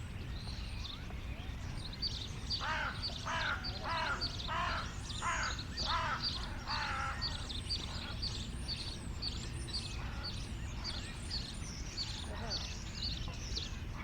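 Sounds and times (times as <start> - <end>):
harsh bird calls: 2.6 - 8.4.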